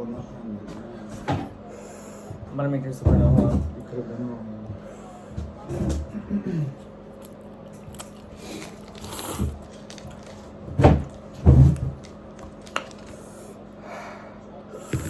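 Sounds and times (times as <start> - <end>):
person chewing noodles: 7.1 - 13.6, 14.8 - 15.0.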